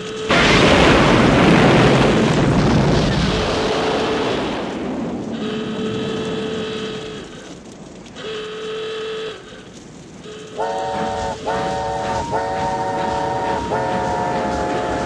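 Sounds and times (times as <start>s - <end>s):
harsh multi-note horn blasts: 5.3s - 7.4s, 8.2s - 15.0s
steam whistle blasts: 5.4s - 7.3s, 8.2s - 9.6s, 10.2s - 15.0s.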